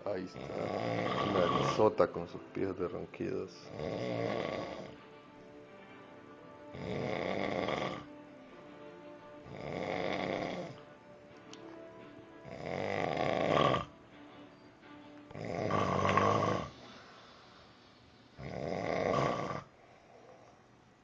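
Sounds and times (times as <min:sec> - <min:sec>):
loud rasping snoring: 0:00.2 - 0:01.9, 0:03.6 - 0:05.0, 0:06.7 - 0:08.2, 0:09.4 - 0:10.8, 0:12.4 - 0:13.9, 0:15.3 - 0:16.9, 0:18.4 - 0:20.5.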